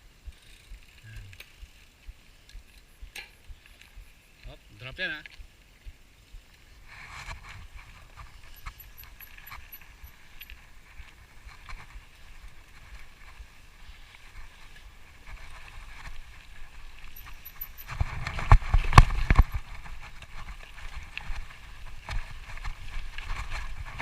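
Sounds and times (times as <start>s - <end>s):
mountain bike rattling over rocks: 7.2s - 24.0s.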